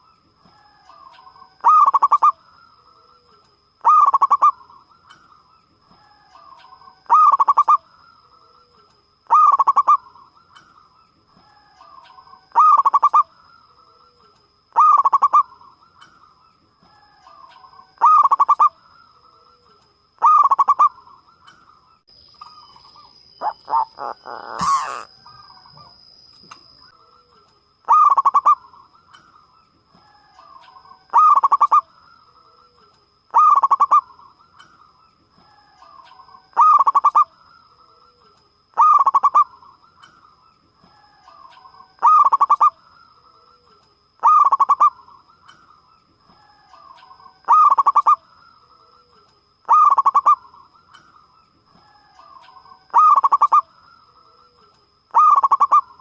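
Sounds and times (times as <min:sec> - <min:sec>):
dove cooing: 0:07.1 - 0:07.8, 0:09.3 - 0:10.0, 0:18.0 - 0:18.7, 0:20.2 - 0:21.0, 0:23.4 - 0:26.0, 0:31.1 - 0:31.8, 0:33.3 - 0:34.1, 0:36.6 - 0:37.2, 0:38.8 - 0:39.5, 0:42.0 - 0:42.7, 0:47.5 - 0:48.2, 0:52.9 - 0:53.6, 0:55.1 - 0:55.9.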